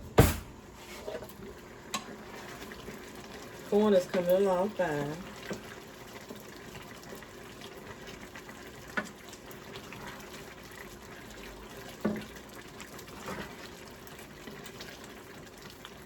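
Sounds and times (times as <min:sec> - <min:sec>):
liquid bubbling in a pot: 0:00.6 - 0:16.0.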